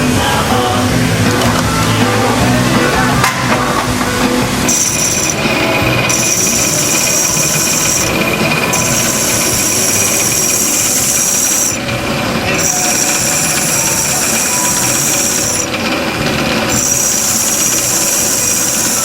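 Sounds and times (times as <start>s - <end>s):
power drill drilling into glass: 4.6s - 19.0s.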